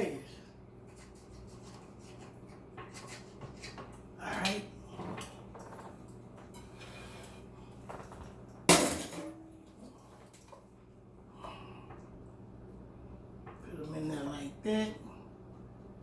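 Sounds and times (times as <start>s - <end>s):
faint clatters: 3.8s - 8.7s
dish clinking set down: 7.9s - 9.6s
kitchenware being handled: 7.9s - 10.6s.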